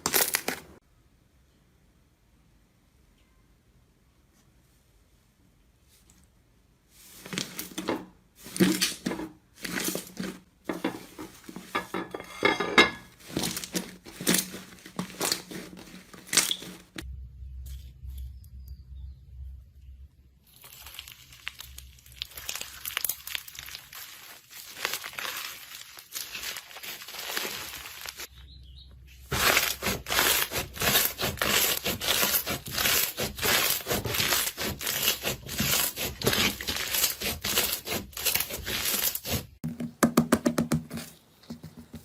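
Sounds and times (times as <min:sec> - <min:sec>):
low hum: 0:17.0 - 0:20.4
slime squished crackling: 0:20.4 - 0:28.3.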